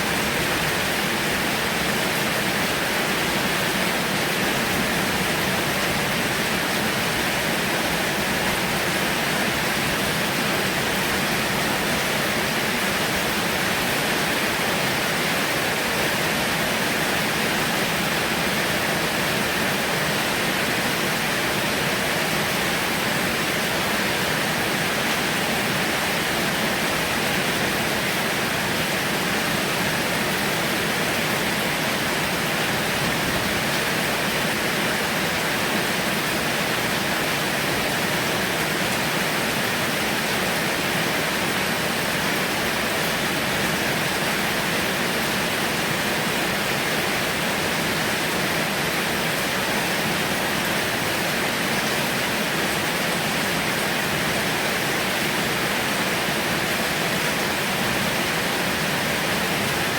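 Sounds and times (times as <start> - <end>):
heavy rain pouring: 0.0 - 59.9.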